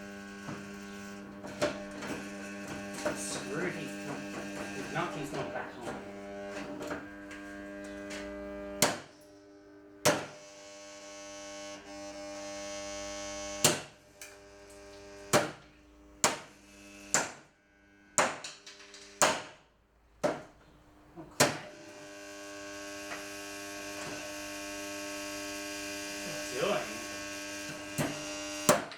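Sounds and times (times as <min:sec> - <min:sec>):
fan motor humming: 0:00.0 - 0:08.8, 0:21.1 - 0:28.6.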